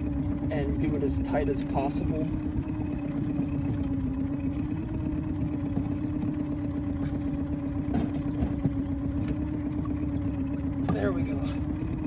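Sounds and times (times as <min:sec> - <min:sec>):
boat motor idling: 0:00.0 - 0:12.0.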